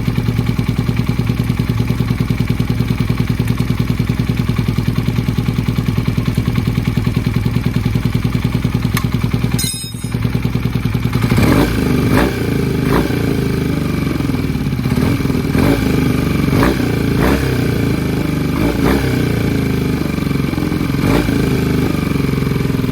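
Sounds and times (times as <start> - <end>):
engine knocking when revved: 0.0 - 22.9
motorcycle engine idling: 0.0 - 22.9.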